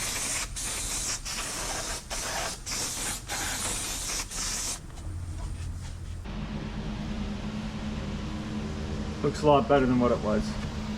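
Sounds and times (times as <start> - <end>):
aerosol can spraying: 0.0 - 6.3.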